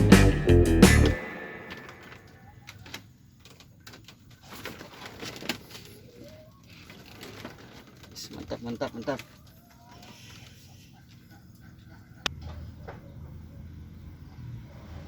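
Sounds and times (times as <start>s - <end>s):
guitar music: 0.0s - 2.2s.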